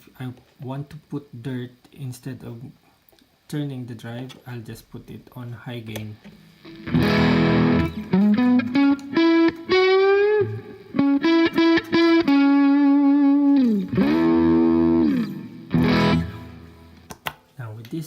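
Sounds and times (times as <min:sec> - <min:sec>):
distorted electric guitar: 0:06.3 - 0:17.1.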